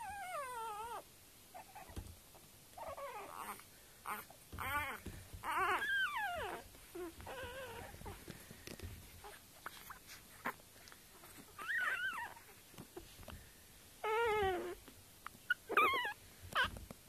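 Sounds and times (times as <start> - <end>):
puppies whimpering: 0.0 - 2.0, 2.8 - 8.3, 11.2 - 13.1, 14.0 - 14.8, 15.4 - 16.8.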